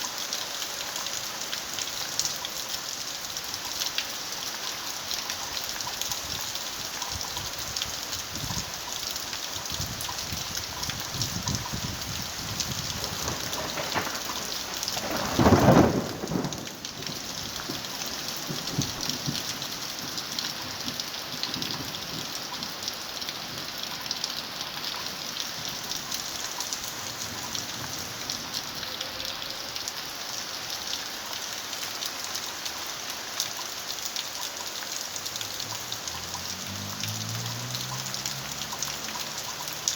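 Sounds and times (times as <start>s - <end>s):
rain pattering: 0.0s - 39.9s
rumbling thunder clap: 11.4s - 19.5s.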